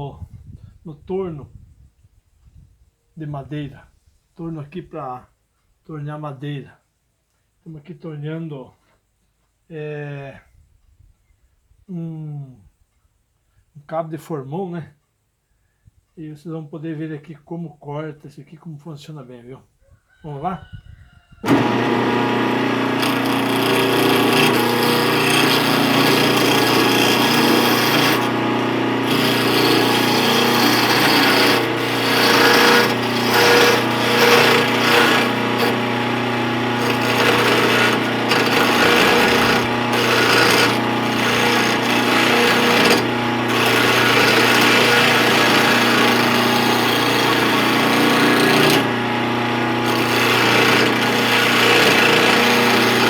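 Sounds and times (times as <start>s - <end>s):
tool scraping spinning wood: 21.4s - 53.0s
wood lathe motor hum: 21.4s - 53.0s.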